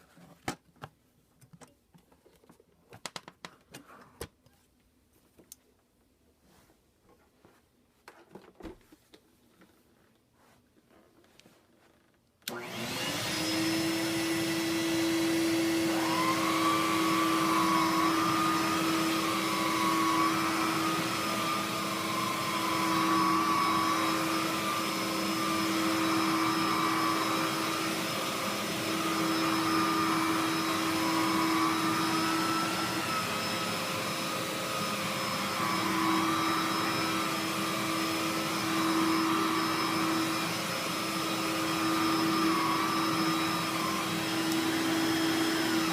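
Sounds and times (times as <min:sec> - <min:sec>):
upright vacuum cleaner running: 0:12.4 - 0:45.9.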